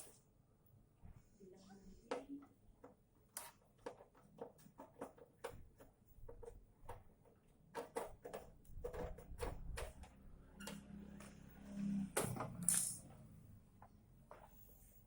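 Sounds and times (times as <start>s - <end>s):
tools clicking and knocking: 12.2s - 13.2s.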